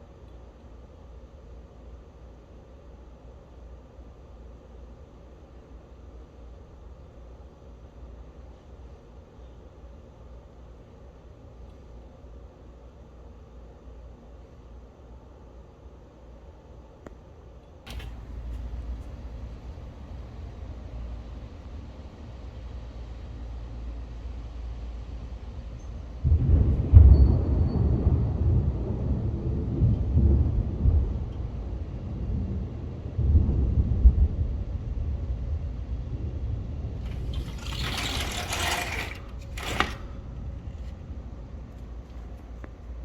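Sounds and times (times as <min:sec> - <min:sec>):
thunder rumbling: 0:26.2 - 0:38.1.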